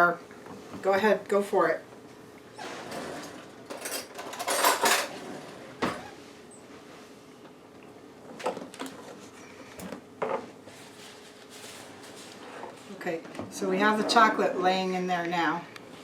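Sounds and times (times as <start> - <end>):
utensils scraping and rustling: 2.6 - 5.6, 10.7 - 14.8.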